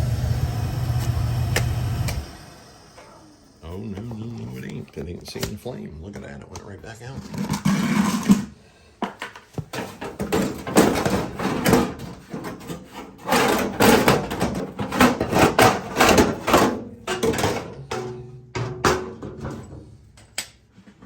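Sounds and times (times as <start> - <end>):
tools knocking and clattering: 7.1 - 21.0.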